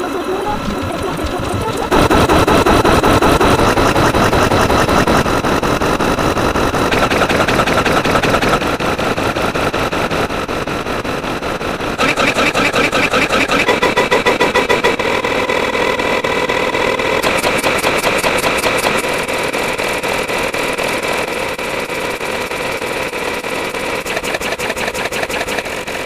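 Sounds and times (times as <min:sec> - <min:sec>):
looped sound effects: 0:00.0 - 0:10.4, 0:11.0 - 0:26.0
rapid even pulsing: 0:00.0 - 0:26.0.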